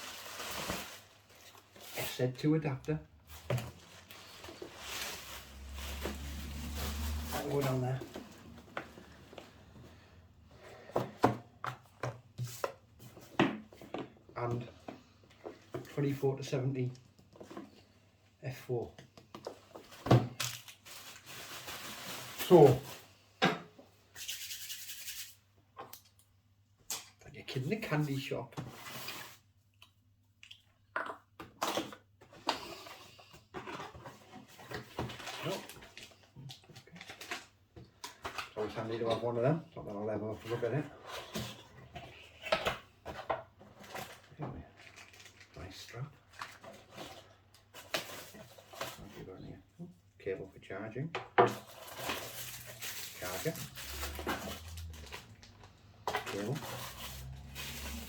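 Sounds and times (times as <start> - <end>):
rustling of cardboard and wrappers: 0.0 - 16.0, 19.4 - 23.2, 31.7 - 49.4, 51.5 - 58.0.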